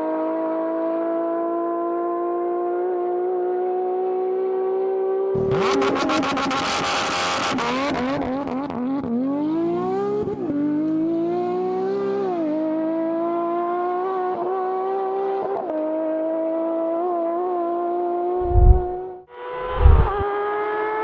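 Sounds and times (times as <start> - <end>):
short low thump: 18.4 - 19.0, 19.7 - 20.2
sports car engine revving: 19.7 - 20.2.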